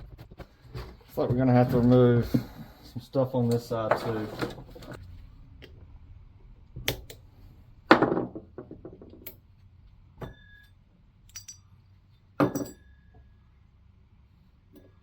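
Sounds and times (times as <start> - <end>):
metal tools knocking on workbench: 7.9 - 9.2, 12.4 - 12.9.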